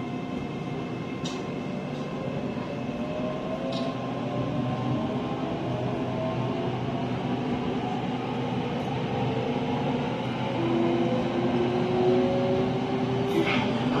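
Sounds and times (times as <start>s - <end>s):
train rumble: 0.0s - 14.0s.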